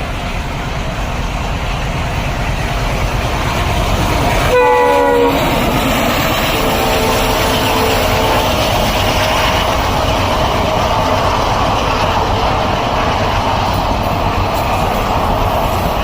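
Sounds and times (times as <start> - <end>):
rumble of moving train: 0.0 - 16.0
locomotive horn blast: 4.4 - 5.6.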